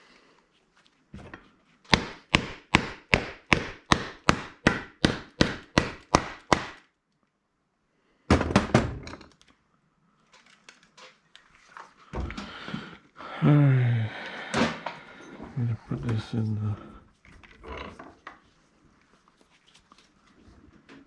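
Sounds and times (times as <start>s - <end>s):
hammer striking hard: 1.9s - 6.8s.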